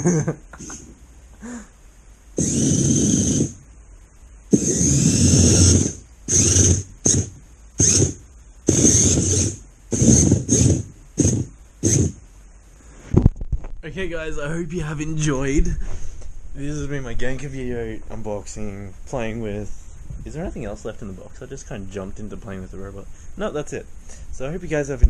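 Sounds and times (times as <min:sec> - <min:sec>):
servo motors whirring: 0:02.4 - 0:03.6, 0:04.5 - 0:12.2.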